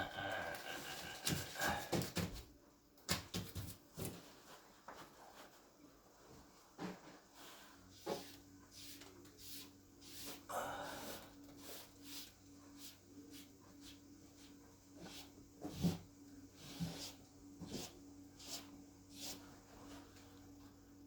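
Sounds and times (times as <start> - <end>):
hand rubbing on ceiling: 0.0 - 2.2, 7.4 - 20.7
faint steady hum: 0.0 - 21.0.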